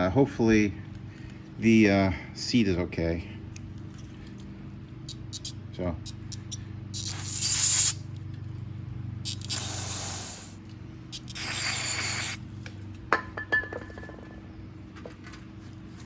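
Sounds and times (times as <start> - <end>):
aerosol spray hissing: 6.2 - 8.0, 9.3 - 10.6, 11.2 - 12.4.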